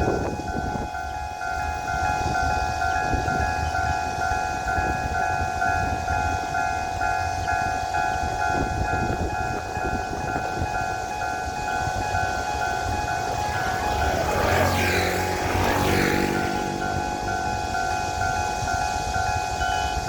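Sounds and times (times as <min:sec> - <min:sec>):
low rumble: 0:12.1 - 0:19.2.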